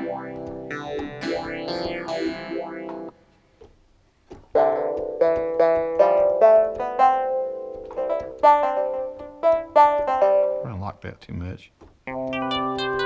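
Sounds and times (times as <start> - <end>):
plucked guitar-like synth notes: 0.0 - 3.2, 4.5 - 10.7, 12.1 - 13.0.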